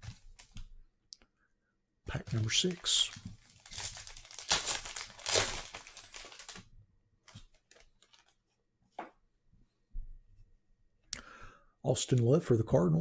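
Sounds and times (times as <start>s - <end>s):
wrapper crinkling: 2.1s - 8.4s
card pack wrapper tearing: 2.3s - 6.6s.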